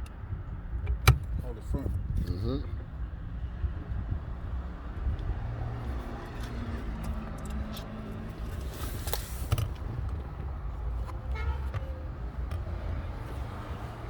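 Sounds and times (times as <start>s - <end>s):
car horn toot: 11.2s - 12.0s.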